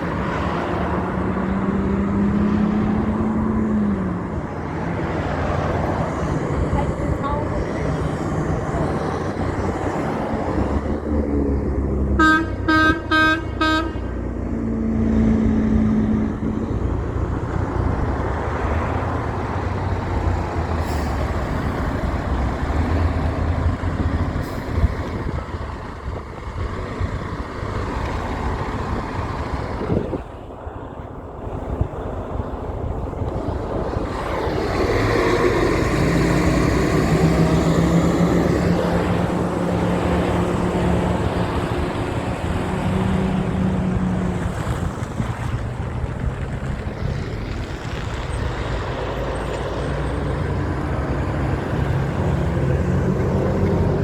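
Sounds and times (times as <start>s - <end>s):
heavy trucks passing: 0.0s - 54.0s
truck horn toots: 12.1s - 14.3s.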